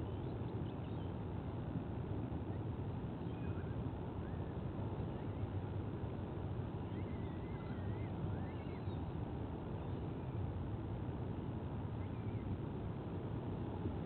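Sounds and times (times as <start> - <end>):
faint bird whistles and chirps: 0.0 - 1.2, 3.2 - 5.7, 6.7 - 10.4, 11.9 - 12.6
low outdoor rumble: 0.0 - 14.0.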